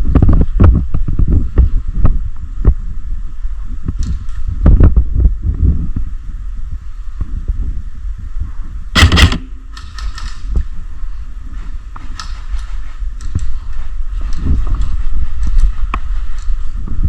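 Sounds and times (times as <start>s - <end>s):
wind rumble on microphone: 0.0s - 17.0s
airsoft gunfire cracks: 9.0s - 9.9s.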